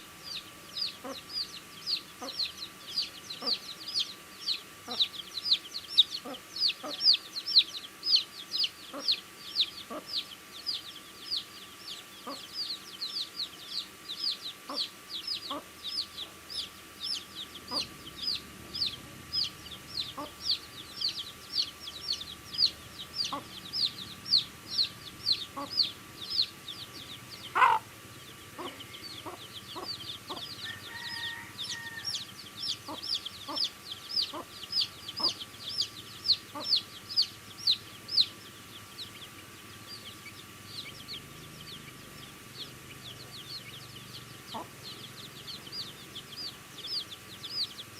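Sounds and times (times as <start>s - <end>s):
baby chicks peeping: 0.0s - 47.9s
louder lower chick call: 27.5s - 27.9s.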